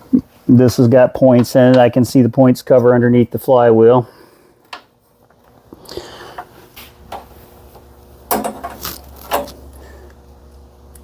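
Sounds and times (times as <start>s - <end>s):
low steady hum: 0.0s - 11.0s
tools clicking and knocking: 8.3s - 9.6s.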